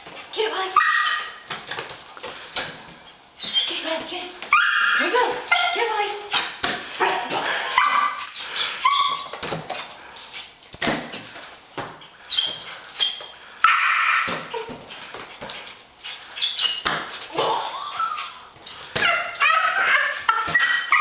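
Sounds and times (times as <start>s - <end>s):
puppy whining and yipping: 4.5s - 5.0s, 7.7s - 9.4s, 17.8s - 21.0s.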